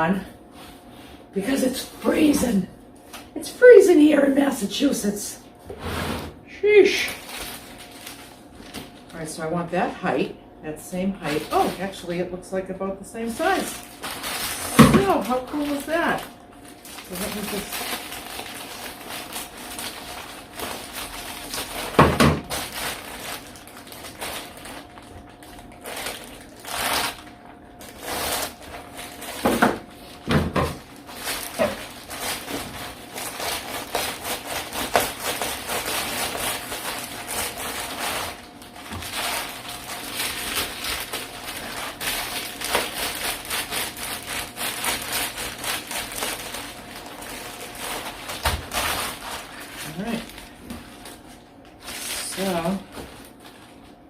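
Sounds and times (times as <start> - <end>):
insulation board scraping and rustling: 5.6 - 6.4.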